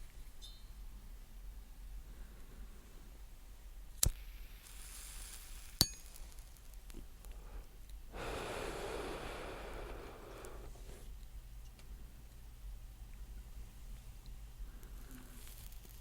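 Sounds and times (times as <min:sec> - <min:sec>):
lighter hiss: 0:03.9 - 0:11.3, 0:14.2 - 0:16.0
breathy exhale: 0:07.4 - 0:11.1.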